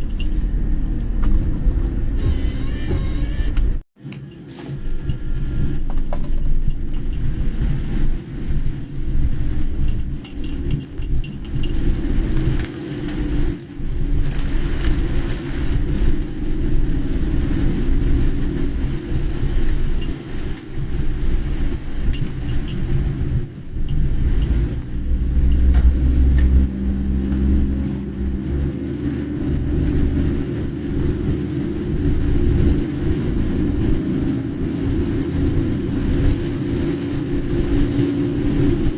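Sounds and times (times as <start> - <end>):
car engine and tyre rumble: 0.0 - 38.9
faint rattles and clicks: 3.5 - 16.8, 17.9 - 26.6.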